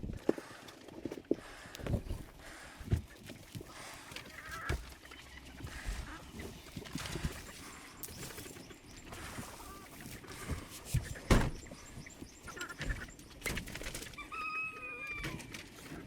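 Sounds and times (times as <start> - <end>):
knocks and handling noises: 1.0 - 13.8
loud thump: 11.3 - 11.6.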